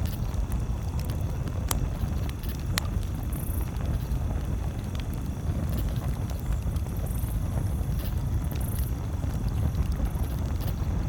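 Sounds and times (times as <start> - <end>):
campfire crackling and popping: 0.0 - 11.0
low steady rumble: 0.0 - 11.0.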